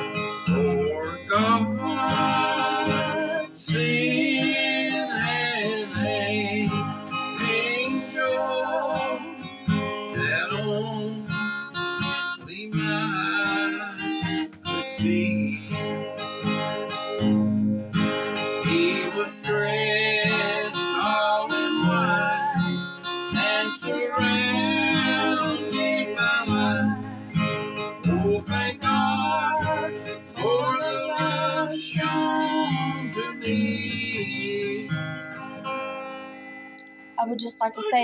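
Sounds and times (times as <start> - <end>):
person singing: 0.0 - 11.3, 18.6 - 35.1, 37.5 - 38.0
acoustic guitar strumming: 0.0 - 38.0.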